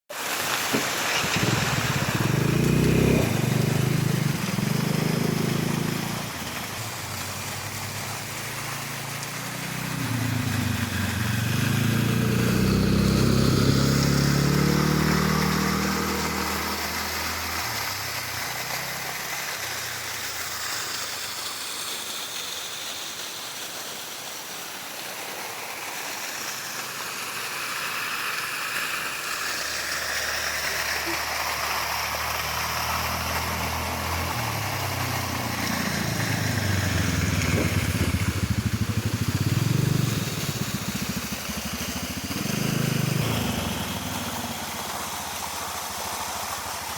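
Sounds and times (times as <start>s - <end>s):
rushing hiss: 0.1s - 46.9s
scooter engine revving: 0.7s - 20.1s, 29.4s - 46.9s.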